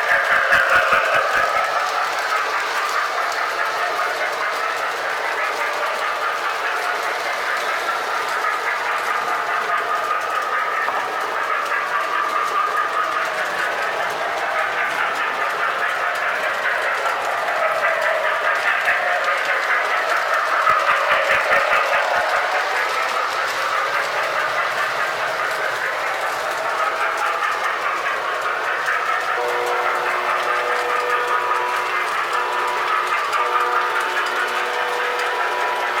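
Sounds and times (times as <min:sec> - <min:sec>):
toy train motor whirring: 0:00.0 - 0:36.0
two-note train horn: 0:29.4 - 0:31.8.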